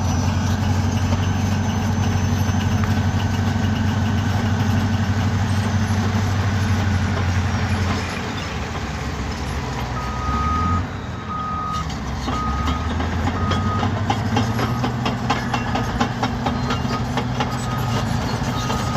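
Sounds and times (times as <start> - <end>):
diesel engine under load: 0.0 - 18.9
backup alarm beeps: 10.0 - 12.8.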